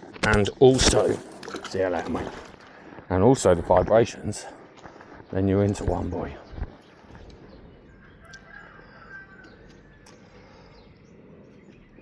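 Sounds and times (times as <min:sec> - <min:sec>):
faint bird call: 0:07.9 - 0:11.0.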